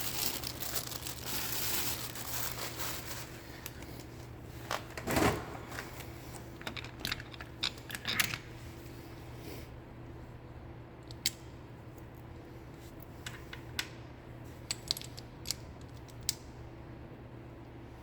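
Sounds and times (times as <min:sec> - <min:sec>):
plastic packaging crinkling: 0:00.0 - 0:04.1.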